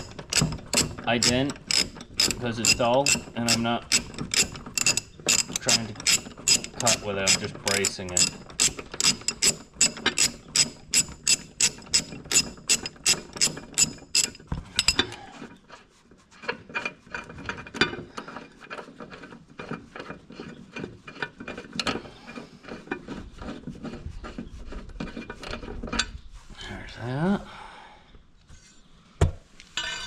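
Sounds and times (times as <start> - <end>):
ratchet wrench clicking: 0.0 - 15.0
metal scraping: 0.0 - 15.1, 29.7 - 30.0.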